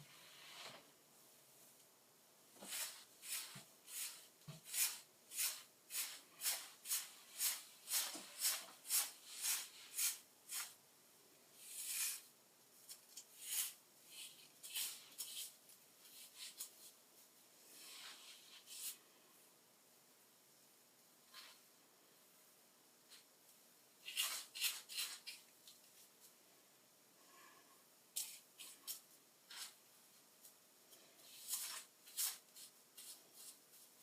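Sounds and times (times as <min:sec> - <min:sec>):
brush strokes through hair: 0:02.6 - 0:10.8.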